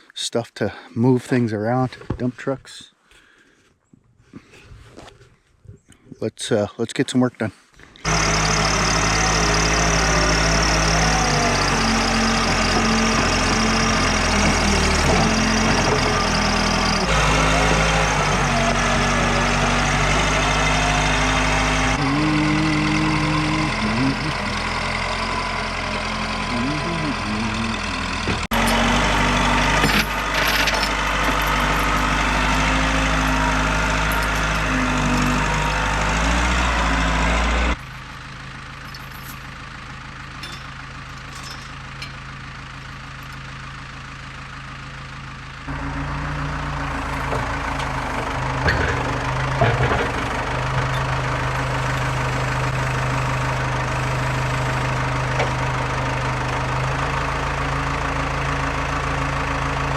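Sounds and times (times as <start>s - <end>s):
heavy equipment engine running: 8.0s - 59.9s.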